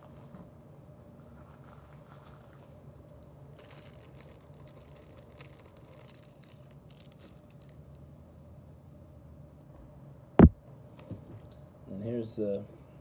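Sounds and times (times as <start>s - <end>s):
steady low hum: 0.0s - 13.0s
hands crinkling small objects: 1.2s - 8.0s.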